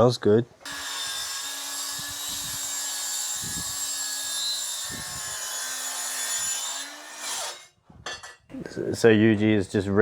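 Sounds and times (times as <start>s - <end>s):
chop saw cutting metal tubing: 0.6s - 7.7s.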